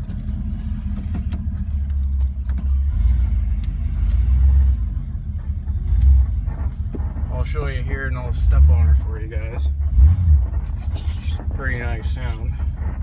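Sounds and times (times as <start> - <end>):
light rattles and clicks: 0.0 - 4.1
truck exhaust drone: 0.0 - 13.0.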